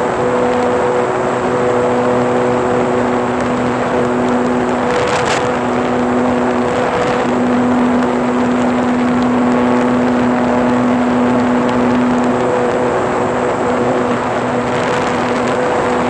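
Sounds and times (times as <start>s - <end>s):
model airplane motor droning: 0.0s - 16.0s
wind rushing over microphone: 0.0s - 16.0s.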